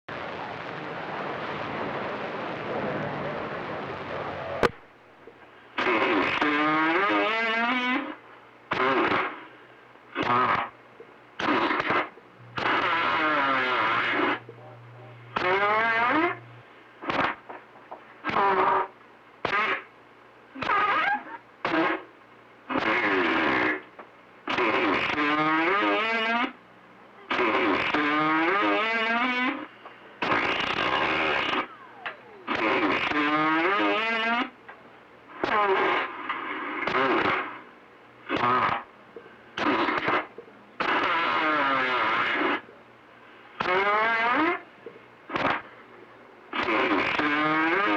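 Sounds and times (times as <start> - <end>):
garbled radio voices: 0.1 - 7.4, 11.4 - 18.9
low steady radio hum: 0.1 - 47.9.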